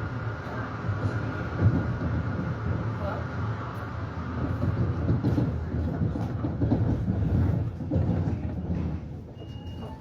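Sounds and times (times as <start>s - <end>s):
train car rumbling in motion: 0.0s - 10.0s.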